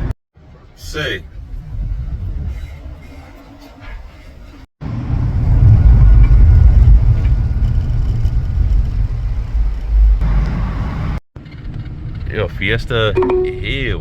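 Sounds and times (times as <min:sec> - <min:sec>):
car engine and road noise: 0:02.8 - 0:13.8.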